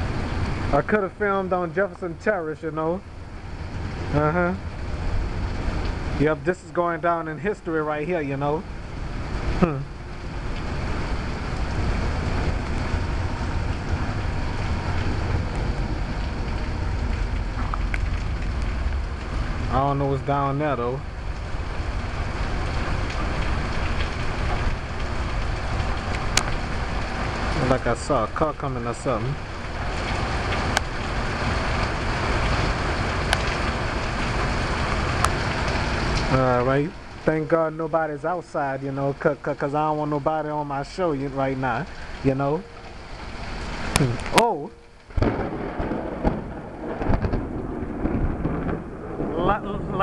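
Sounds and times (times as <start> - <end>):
low rumble: 0.0 - 38.1, 41.0 - 50.0
rain hiss: 0.0 - 50.0
wind buffeting microphone: 45.1 - 50.0.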